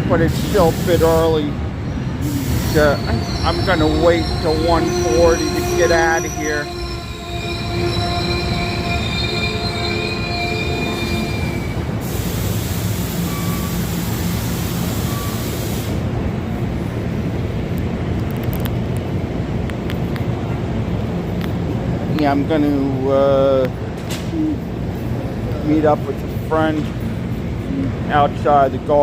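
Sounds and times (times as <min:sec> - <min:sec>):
train rumbling: 0:00.0 - 0:29.0
loud hiss: 0:00.2 - 0:01.4, 0:02.2 - 0:06.7, 0:08.6 - 0:16.1
high-pitched train squeal: 0:00.5 - 0:16.0.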